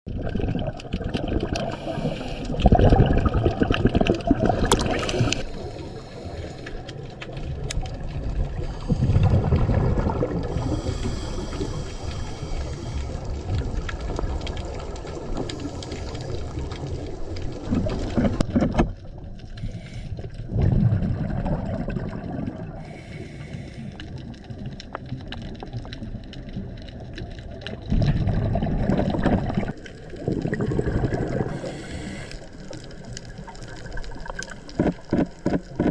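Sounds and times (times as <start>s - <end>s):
exhaled bubbles rushing: 0.1s - 19.5s, 20.2s - 22.9s, 24.4s - 35.1s
underwater hiss: 1.6s - 2.7s, 4.7s - 6.9s, 10.4s - 13.4s, 15.2s - 17.1s, 19.6s - 20.4s, 22.7s - 24.1s, 31.3s - 33.0s.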